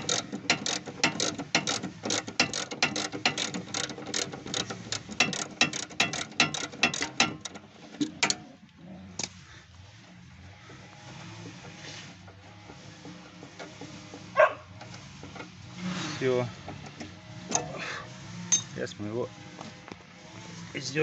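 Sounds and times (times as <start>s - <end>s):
ratchet wrench clicking: 0.0s - 7.6s.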